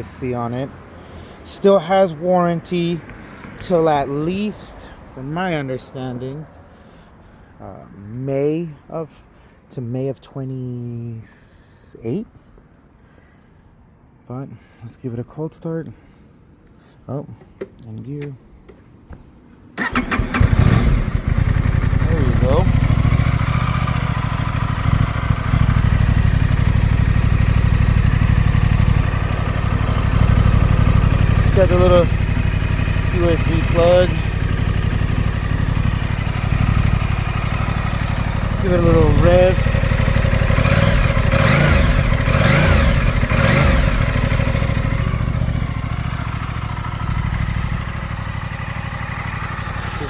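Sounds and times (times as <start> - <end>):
motorcycle engine idling: 19.8 - 50.0.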